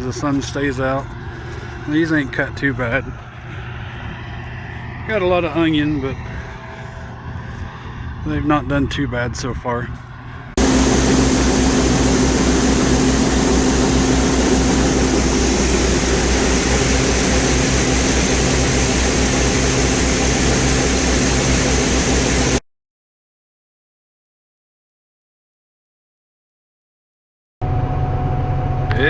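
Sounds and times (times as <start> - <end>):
diesel machinery engine drone: 10.6 - 22.6
mechanical hum: 10.6 - 22.6
wide hiss: 10.6 - 22.6.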